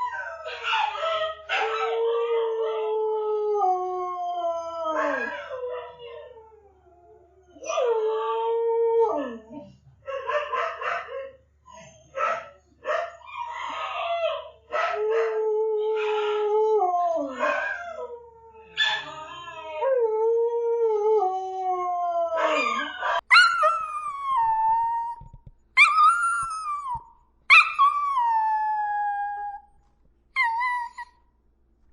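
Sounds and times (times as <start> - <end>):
dogs howling: 0.0 - 25.2.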